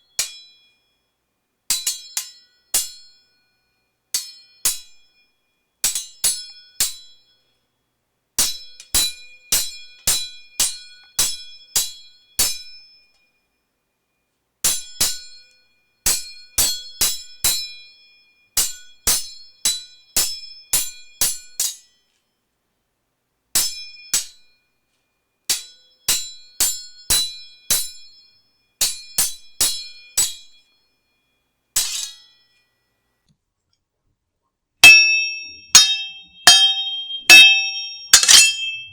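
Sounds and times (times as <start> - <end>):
sword blade strikes: 31.8 - 32.2, 34.8 - 38.9
noisy metallic hit: 34.8 - 38.9.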